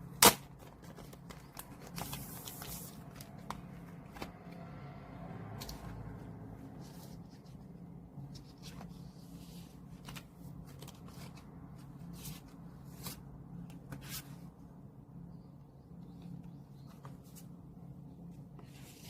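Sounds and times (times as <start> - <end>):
steady low hum: 0.0 - 19.0
paper and plastic rustling: 0.4 - 4.4.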